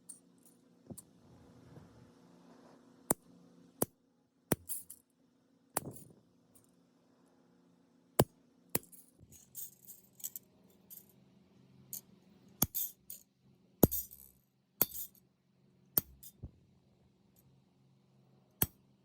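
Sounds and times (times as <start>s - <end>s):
jingle of small metal pieces: 9.3s - 11.1s, 12.7s - 15.2s.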